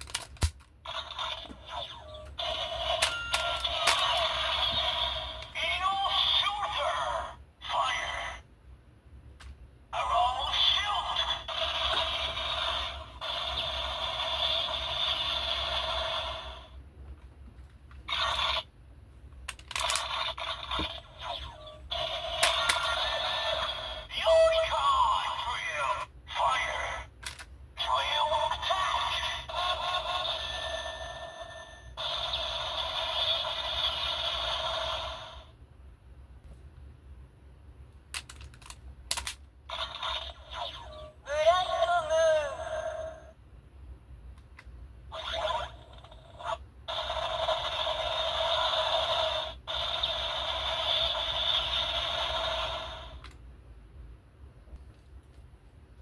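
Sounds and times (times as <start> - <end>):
toy gun noisy burst: 0.9 - 5.5, 11.3 - 16.6, 21.9 - 24.6, 32.0 - 35.4, 46.9 - 53.2.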